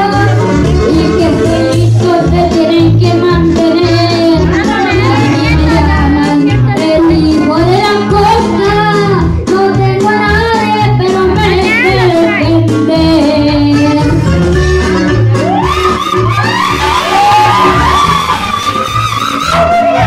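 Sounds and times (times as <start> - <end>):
child singing: 0.0 - 14.2
instrumental accompaniment with bass: 0.0 - 20.0.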